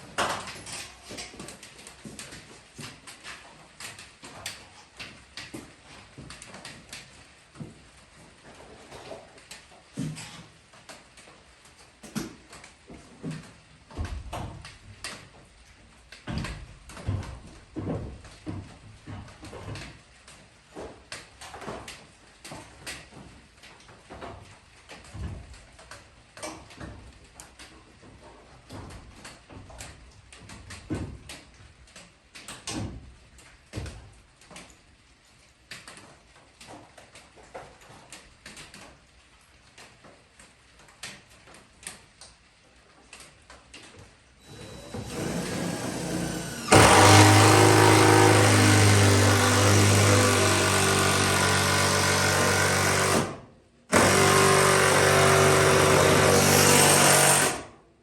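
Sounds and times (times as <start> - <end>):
motor humming: 44.5 - 53.3.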